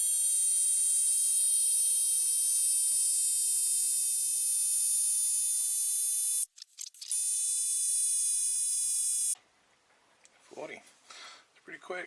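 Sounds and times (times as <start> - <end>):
electric tyre inflator whine: 0.0 - 6.4.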